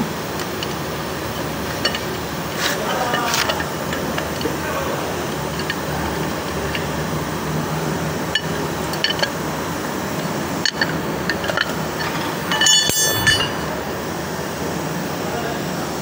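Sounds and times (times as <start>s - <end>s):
steady background hum: 0.0s - 16.0s
hand tools clicking on engine parts: 5.3s - 7.0s, 10.1s - 13.6s
ringing metallic clinks: 12.0s - 13.8s.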